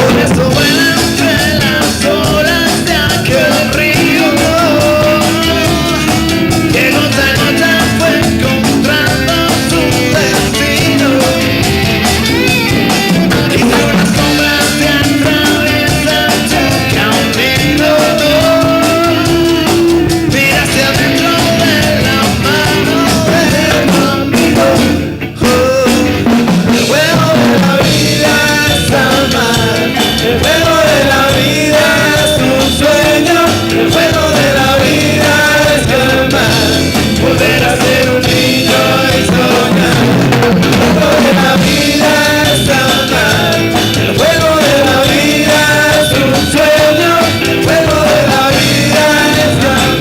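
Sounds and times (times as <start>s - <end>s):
drum kit: 0.0s - 50.0s
live rock band playing: 0.0s - 50.0s
wavering melody line: 0.9s - 25.1s.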